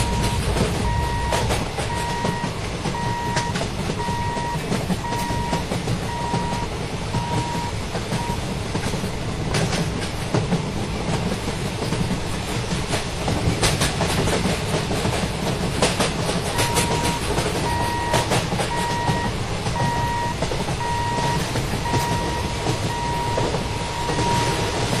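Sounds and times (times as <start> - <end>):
high electronic beep: 0.0 - 2.4, 16.6 - 24.5
train rumbling past: 0.0 - 25.0
wheels clattering over rail joints: 0.0 - 25.0.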